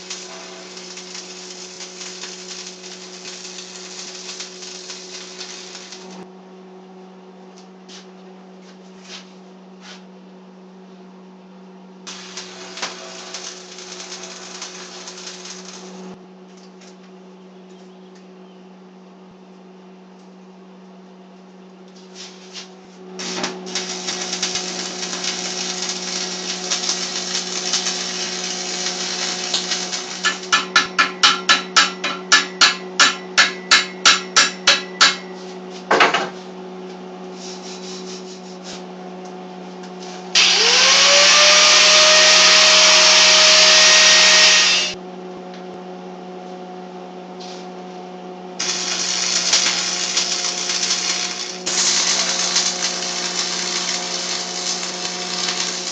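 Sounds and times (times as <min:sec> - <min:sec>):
noisy metalworking: 0:00.0 - 0:06.2, 0:12.1 - 0:16.9, 0:21.9 - 0:36.6, 0:40.0 - 0:45.0, 0:48.6 - 0:55.9
steady low hum: 0:00.0 - 0:40.4
power tool whining: 0:12.1 - 0:16.2, 0:23.2 - 0:31.4, 0:40.4 - 0:45.0, 0:48.6 - 0:55.9
hammer blows: 0:30.2 - 0:35.5.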